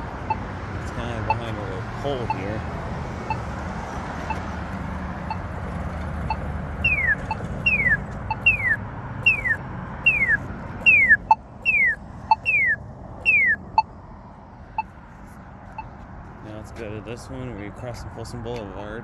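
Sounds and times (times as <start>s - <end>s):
pedestrian signal locator ticking: 0.0s - 14.0s
falling chirp tone: 6.3s - 13.6s.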